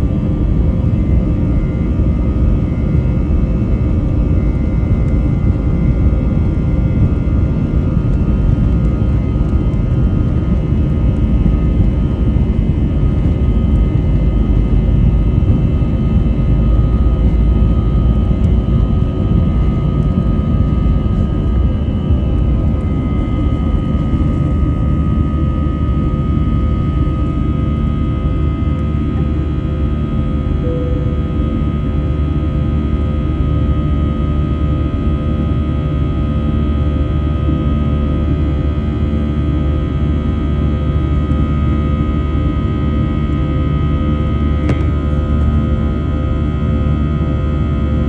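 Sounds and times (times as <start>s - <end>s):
jet engines deep rumble: 0.0s - 48.0s.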